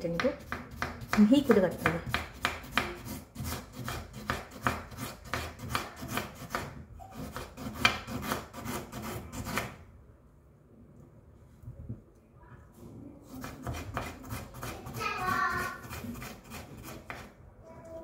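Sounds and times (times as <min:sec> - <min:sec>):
knife slicing on chopping board: 0:13.4 - 0:15.0.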